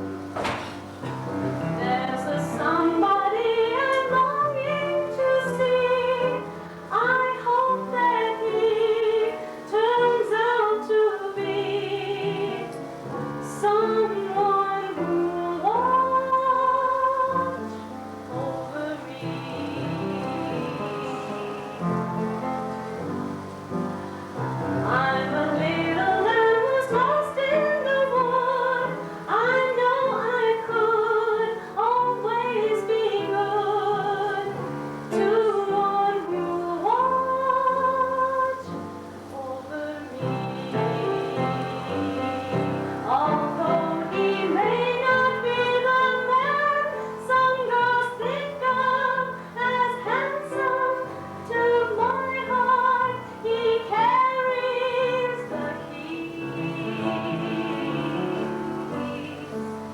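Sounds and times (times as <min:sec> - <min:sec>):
woman singing a slow ballad: 0:01.6 - 0:22.7, 0:24.7 - 0:59.9.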